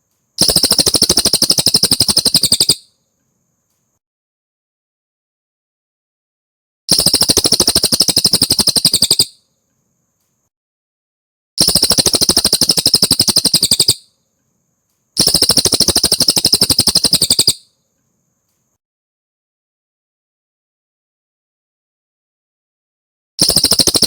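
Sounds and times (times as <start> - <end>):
songbird rapid trills: 0.4 - 2.9, 6.9 - 9.4, 11.6 - 14.1, 15.2 - 17.6, 23.4 - 24.0.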